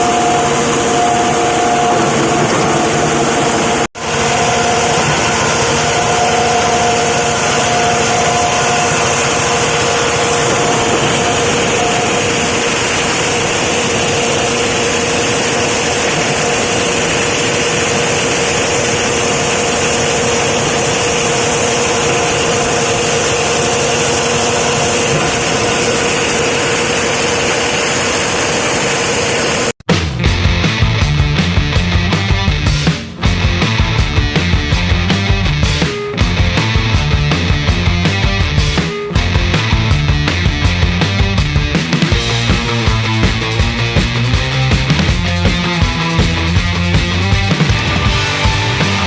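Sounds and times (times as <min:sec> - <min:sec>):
plastic crusher machine running: 0:00.0 - 0:29.8.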